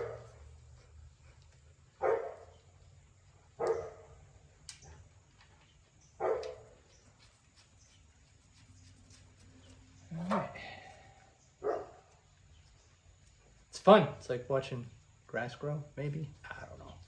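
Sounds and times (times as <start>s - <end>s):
dog barking: 0.0s - 0.4s, 2.0s - 2.5s, 3.6s - 4.2s, 6.2s - 6.8s, 11.6s - 12.1s.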